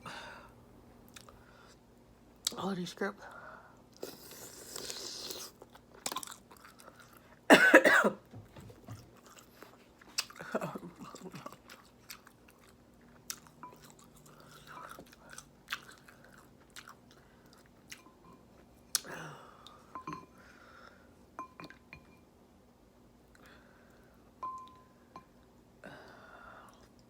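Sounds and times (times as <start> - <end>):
wet chewing and mouth clicks: 9.0 - 18.1.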